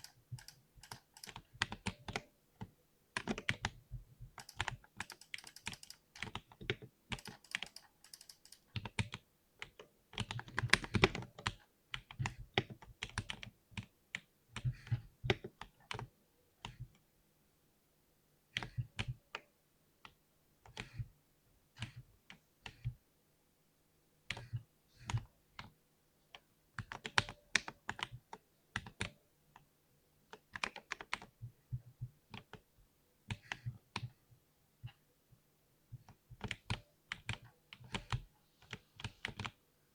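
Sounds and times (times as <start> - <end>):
mechanical keyboard typing: 0.0 - 2.2, 3.2 - 9.2.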